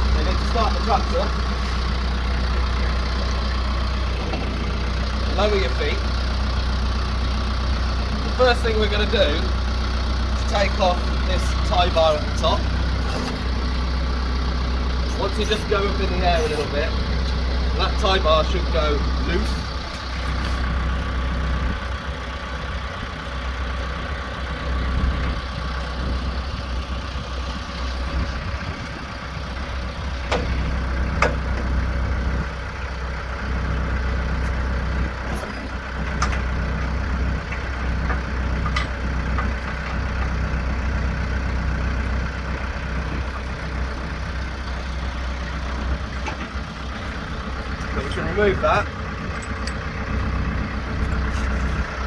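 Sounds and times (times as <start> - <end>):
tractor diesel engine idling: 0.0 - 52.0
sharp clicks and knocks: 30.2 - 30.6, 31.2 - 31.7, 35.4 - 40.4, 49.3 - 49.9.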